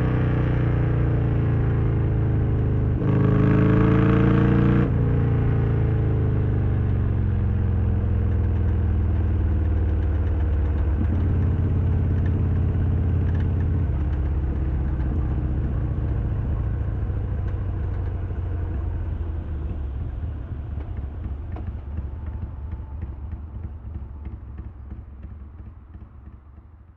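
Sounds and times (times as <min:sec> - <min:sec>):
motorcycle engine running at low revs: 0:00.0 - 0:26.9.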